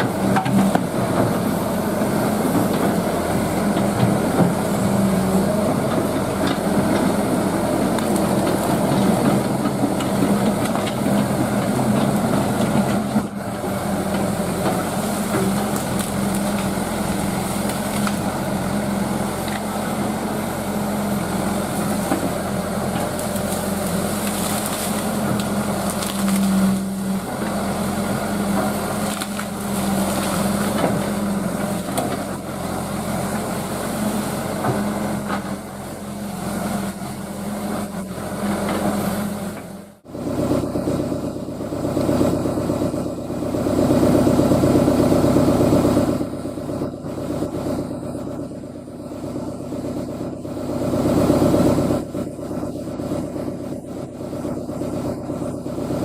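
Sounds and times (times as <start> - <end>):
diesel engine under load: 0.0 - 56.0
branches cracking and splintering: 14.0 - 20.2, 21.2 - 32.8.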